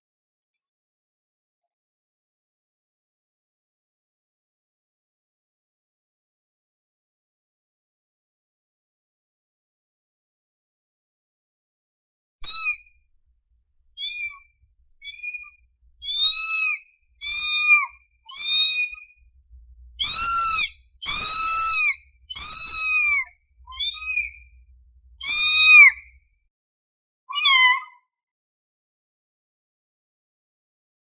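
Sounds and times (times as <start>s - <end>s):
kitten meowing: 12.4s - 12.8s, 14.0s - 14.4s, 15.0s - 19.1s, 20.0s - 24.5s, 25.2s - 26.0s, 27.3s - 28.0s.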